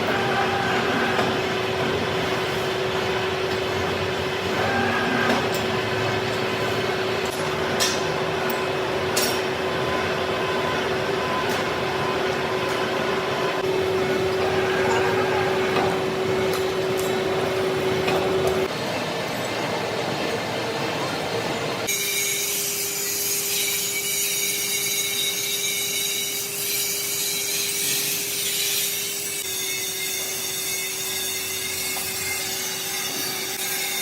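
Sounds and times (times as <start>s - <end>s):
machine tool hum: 0.0s - 18.8s.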